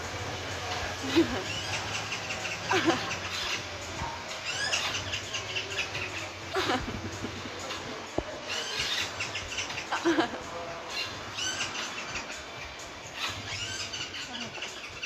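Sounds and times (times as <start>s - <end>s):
parakeet chirping: 1.1s - 6.4s, 8.4s - 9.9s, 10.9s - 15.0s.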